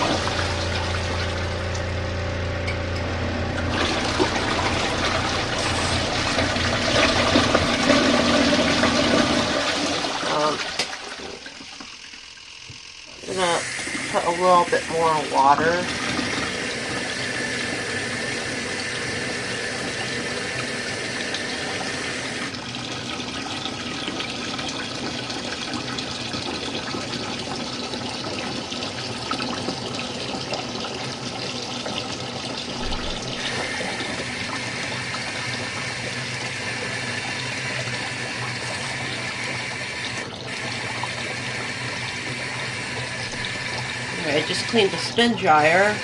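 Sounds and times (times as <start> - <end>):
water running from a faucet: 0.0 - 46.0.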